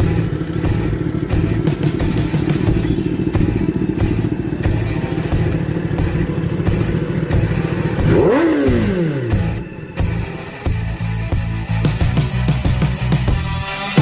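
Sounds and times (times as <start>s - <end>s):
motorcycle engine idling and revving: 0.0s - 14.0s.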